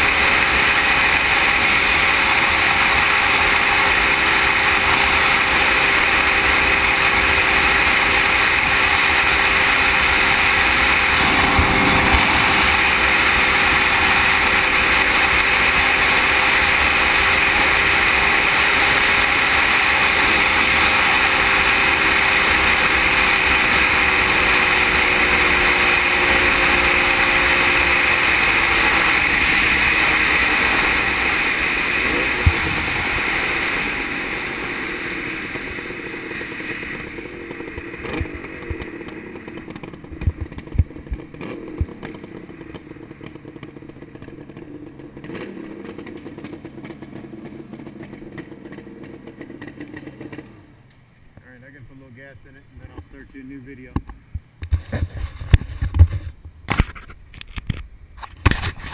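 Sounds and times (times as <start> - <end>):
motorcycle engine running: 0.0 - 58.9
wind noise on microphone: 10.6 - 14.2, 54.1 - 58.9.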